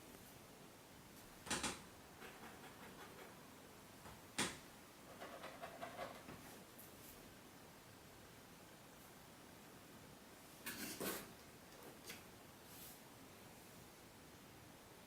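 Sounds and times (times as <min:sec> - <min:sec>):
kitten scratching and pattering: 0:02.2 - 0:03.4, 0:05.1 - 0:06.5.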